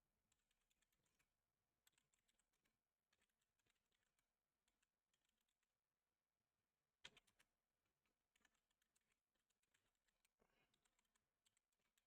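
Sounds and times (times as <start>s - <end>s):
computer keyboard typing: 8.1s - 12.0s.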